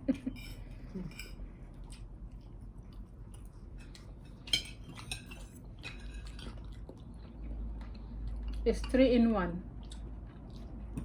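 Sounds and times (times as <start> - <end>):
cutlery clinking on plates: 3.8 - 6.5.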